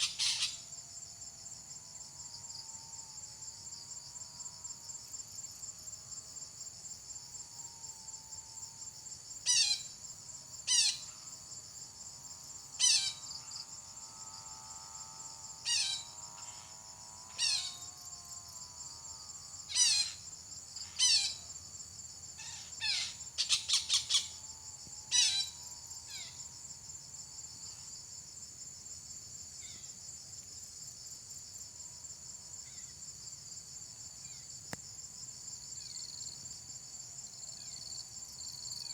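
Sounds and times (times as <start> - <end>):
parakeet shrill calls: 0.0 - 0.6
crickets chorus: 0.0 - 38.9.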